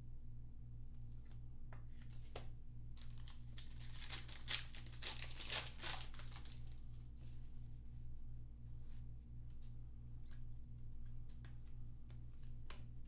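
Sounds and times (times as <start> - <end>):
foil wrapper crinkling and tearing: 3.0 - 7.0.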